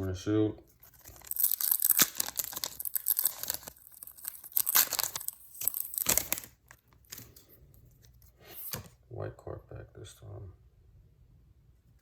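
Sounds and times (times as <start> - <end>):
foil wrapper crinkling and tearing: 0.7 - 7.4.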